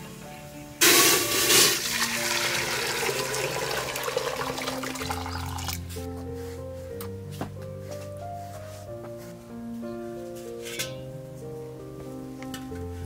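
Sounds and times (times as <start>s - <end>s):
background music: 0.0s - 13.0s
water pouring and splashing: 0.8s - 5.8s.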